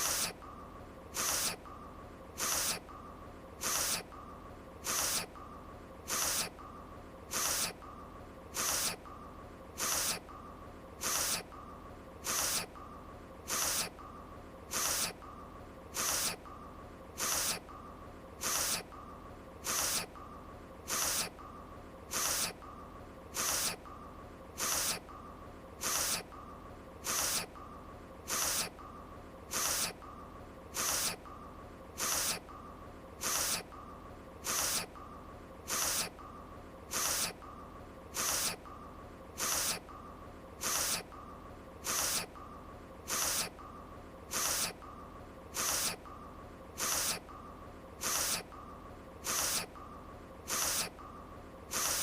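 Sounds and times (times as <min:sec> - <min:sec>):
faint steady tone: 0:00.0 - 0:52.0
nasal sniffle: 0:01.1 - 0:01.6, 0:02.4 - 0:02.8, 0:03.6 - 0:04.1, 0:04.8 - 0:05.4, 0:06.1 - 0:06.6, 0:07.3 - 0:07.8, 0:08.5 - 0:09.0, 0:09.8 - 0:10.2, 0:11.0 - 0:11.5, 0:12.2 - 0:12.8, 0:13.5 - 0:14.0, 0:14.7 - 0:15.2, 0:15.9 - 0:16.4, 0:17.2 - 0:17.6, 0:18.4 - 0:18.9, 0:19.6 - 0:20.1, 0:20.9 - 0:21.3, 0:22.1 - 0:22.6, 0:23.3 - 0:23.8, 0:24.6 - 0:25.0, 0:25.8 - 0:26.3, 0:27.0 - 0:27.5, 0:28.3 - 0:28.8, 0:29.5 - 0:30.0, 0:30.7 - 0:31.2, 0:32.0 - 0:32.4, 0:33.2 - 0:33.7, 0:34.4 - 0:35.0, 0:35.7 - 0:36.2, 0:36.9 - 0:37.4, 0:38.1 - 0:38.6, 0:39.4 - 0:39.8, 0:40.6 - 0:41.1, 0:41.8 - 0:42.4, 0:43.1 - 0:43.6, 0:44.3 - 0:44.8, 0:45.5 - 0:46.0, 0:46.8 - 0:47.2, 0:48.0 - 0:48.5, 0:49.2 - 0:49.8, 0:50.5 - 0:50.9, 0:51.7 - 0:52.0.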